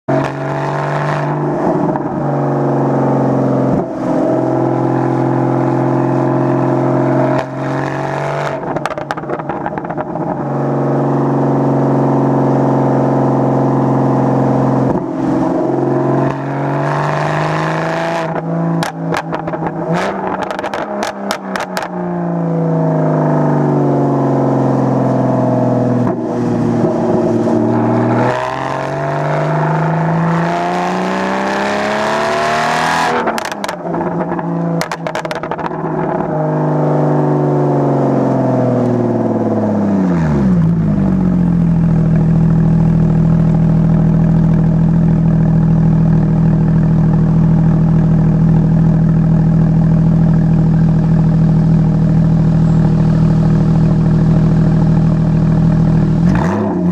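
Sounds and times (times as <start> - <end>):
car engine revving: 0.1 - 56.9
exhaust cracks and pops: 34.8 - 35.8.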